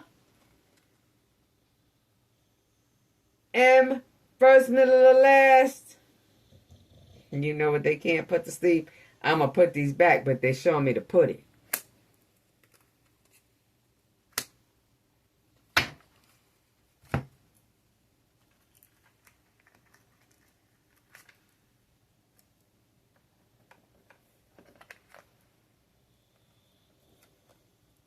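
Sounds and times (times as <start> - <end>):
cards rustling: 23.7 - 25.5.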